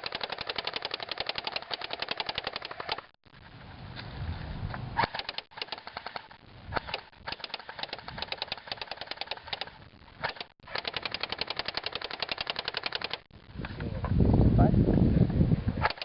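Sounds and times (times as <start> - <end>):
airsoft rifles firing full auto: 0.0 - 3.1, 5.0 - 13.3.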